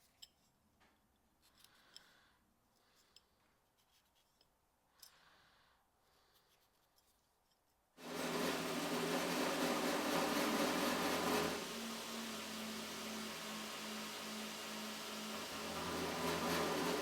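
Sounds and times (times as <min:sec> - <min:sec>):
machine motor whooshing hum: 0:08.0 - 0:17.0.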